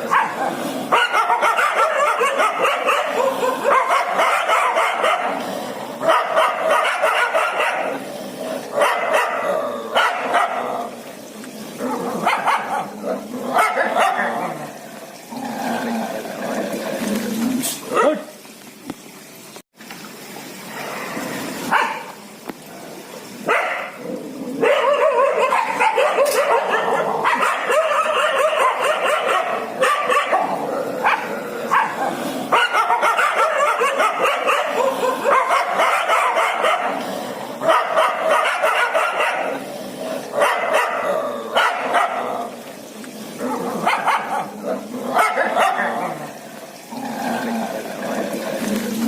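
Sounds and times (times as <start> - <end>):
dog barking and yipping: 0.0 - 5.4, 6.0 - 8.0, 8.8 - 10.7, 12.2 - 12.9, 13.5 - 14.4, 21.7 - 22.2, 23.5 - 24.0, 24.6 - 37.0, 37.6 - 39.6, 40.4 - 42.3, 43.8 - 44.5, 45.2 - 46.2.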